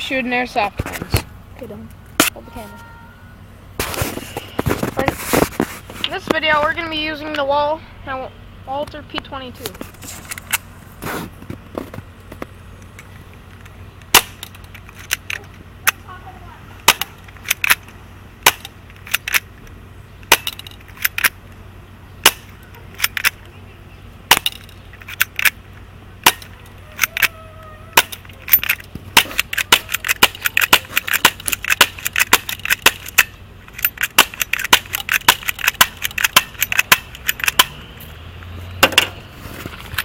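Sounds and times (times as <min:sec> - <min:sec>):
airsoft pistol shots cracking: 0:14.1 - 0:14.5, 0:16.8 - 0:17.8, 0:18.4 - 0:19.4, 0:22.2 - 0:23.3, 0:24.3 - 0:24.6, 0:26.2 - 0:26.6, 0:29.1 - 0:33.3, 0:34.0 - 0:37.8.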